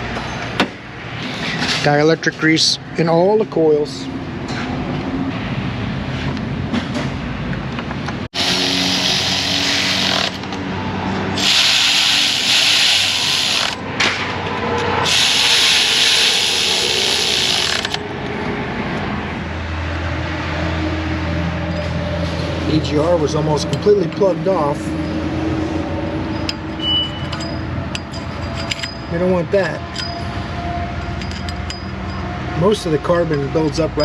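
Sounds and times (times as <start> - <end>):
loud hissing bursts: 11.4 - 13.5
ratchet clicking: 11.4 - 13.8, 15.0 - 18.0.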